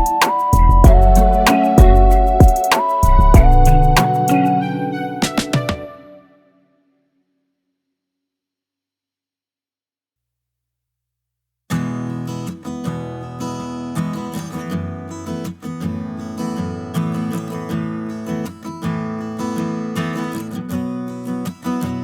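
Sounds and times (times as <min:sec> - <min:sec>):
acoustic guitar music: 0:00.0 - 0:06.3, 0:11.7 - 0:22.0.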